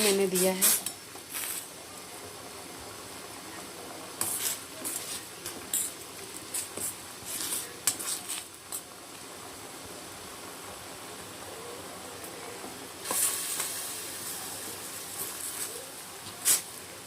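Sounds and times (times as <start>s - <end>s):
boiling hiss: 0.0s - 17.0s
spoon scraping a pot: 4.2s - 8.5s.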